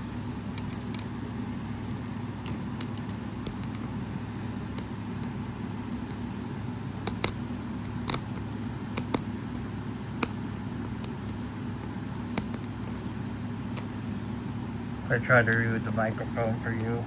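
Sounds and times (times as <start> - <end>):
low steady hum: 0.0 - 17.0
plastic and wire clicking: 8.0 - 9.3.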